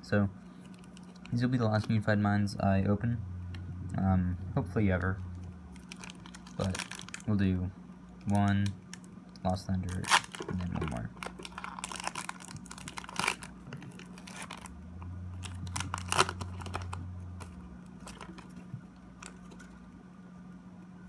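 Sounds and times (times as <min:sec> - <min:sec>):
low hum: 0:00.0 - 0:21.0
foil wrapper tearing and crinkling: 0:00.6 - 0:02.0, 0:05.7 - 0:07.4, 0:08.2 - 0:09.1, 0:09.8 - 0:14.7, 0:15.4 - 0:19.7.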